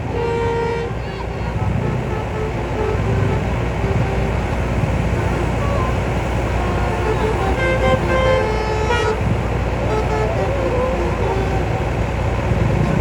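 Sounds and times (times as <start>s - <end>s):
bus horn playing a tune: 0.0s - 13.0s
engine and traffic rumble: 0.0s - 13.0s.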